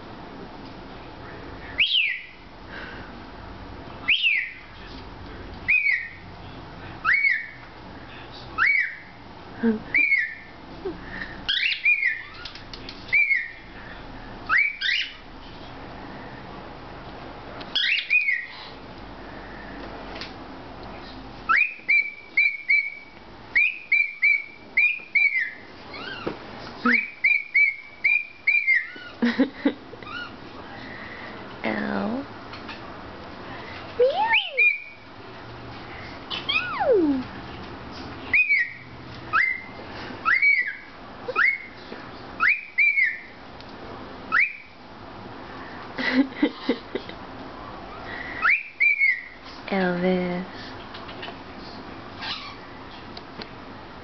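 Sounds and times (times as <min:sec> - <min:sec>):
cockatiel whistling: 0:01.8 - 0:02.4, 0:04.1 - 0:04.6, 0:05.7 - 0:06.2, 0:07.0 - 0:07.6, 0:08.6 - 0:09.1, 0:09.9 - 0:10.5, 0:11.5 - 0:12.5, 0:13.1 - 0:13.6, 0:14.5 - 0:15.2, 0:17.8 - 0:18.5, 0:21.5 - 0:26.3, 0:26.9 - 0:29.1, 0:34.0 - 0:35.0, 0:36.3 - 0:37.2, 0:38.3 - 0:41.8, 0:42.4 - 0:43.3, 0:44.3 - 0:44.8, 0:48.4 - 0:49.4.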